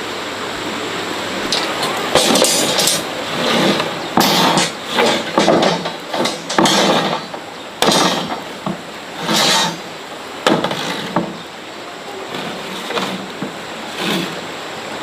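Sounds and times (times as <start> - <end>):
sharp knocks: 1.5 - 11.4, 12.3 - 14.4.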